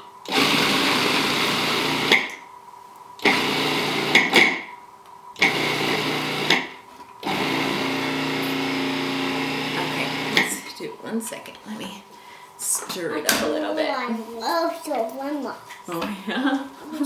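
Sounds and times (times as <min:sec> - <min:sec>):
food processor pulsing: 0:00.2 - 0:02.3, 0:03.2 - 0:04.6, 0:05.4 - 0:10.6.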